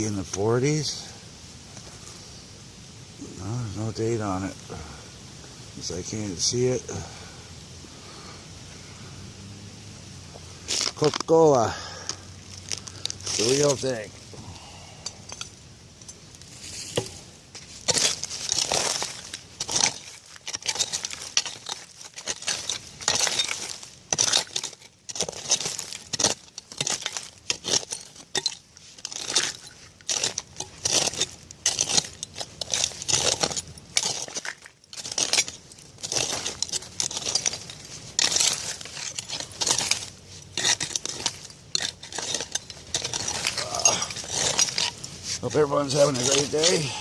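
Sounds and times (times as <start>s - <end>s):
glass clinking and scraping: 15.0s - 47.0s.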